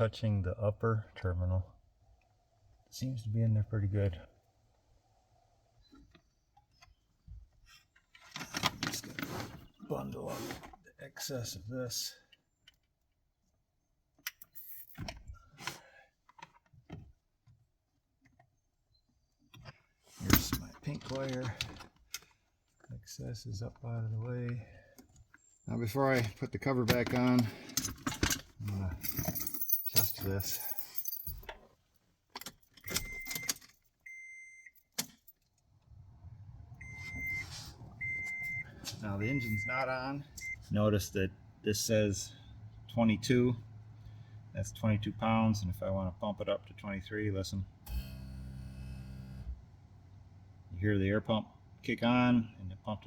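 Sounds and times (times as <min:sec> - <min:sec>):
keys jangling: 0:29.0 - 0:31.5
car warning chime beeping: 0:32.9 - 0:34.9, 0:36.8 - 0:40.7.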